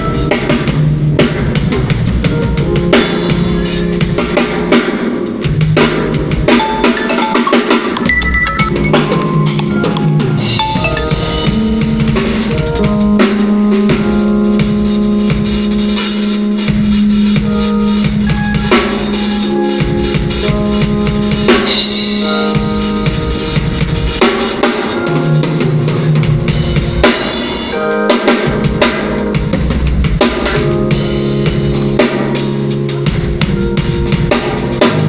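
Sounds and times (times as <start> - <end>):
band playing: 0.0 - 35.0
drum kit beat: 0.0 - 35.0.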